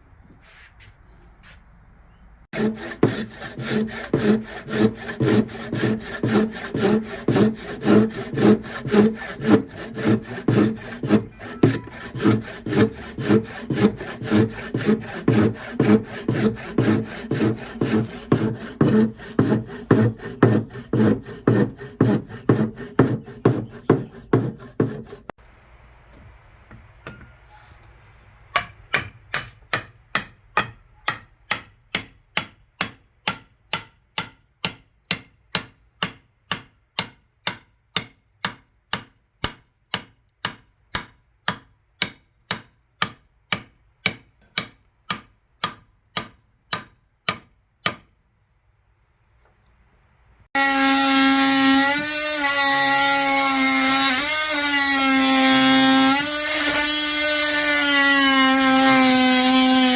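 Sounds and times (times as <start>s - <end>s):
hand tool strokes on wood: 0.3s - 1.6s, 2.6s - 25.4s.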